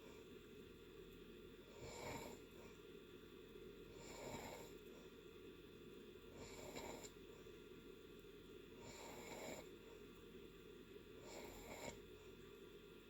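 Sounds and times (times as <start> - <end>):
person snoring faintly: 1.7 - 2.5, 4.0 - 4.8, 6.4 - 7.2, 8.8 - 9.7, 11.2 - 12.0.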